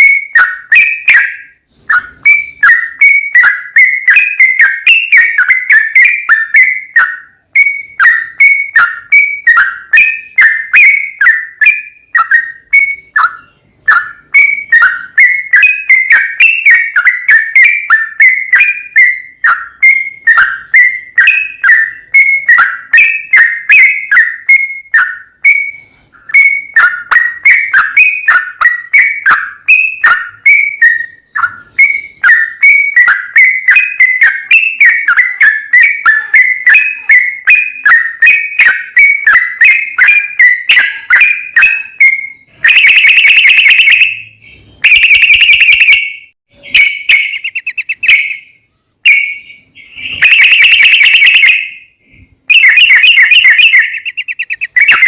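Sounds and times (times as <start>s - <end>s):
bird bubbly whistled notes: 0.0s - 55.0s.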